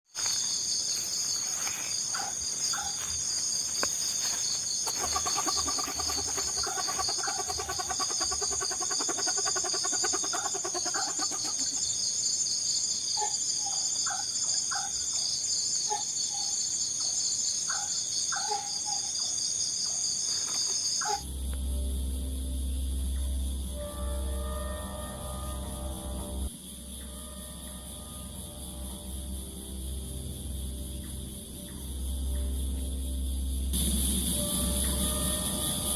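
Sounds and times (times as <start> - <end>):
night insects chirping: 0.1 - 35.9
low trilling animal call: 4.8 - 11.9
low music drone: 21.2 - 35.9.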